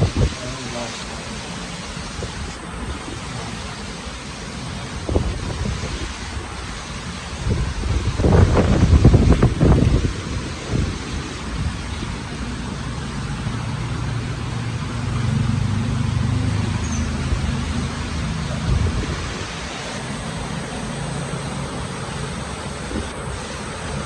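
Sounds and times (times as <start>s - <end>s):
rain: 0.0s - 24.0s
wind: 0.0s - 24.0s
low motor hum: 11.6s - 24.0s.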